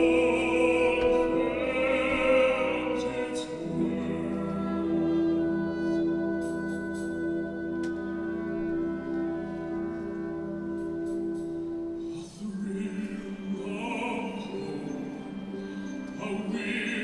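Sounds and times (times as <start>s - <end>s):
choir holding a chord: 0.0s - 6.0s
choir singing with vibrato: 0.0s - 6.5s.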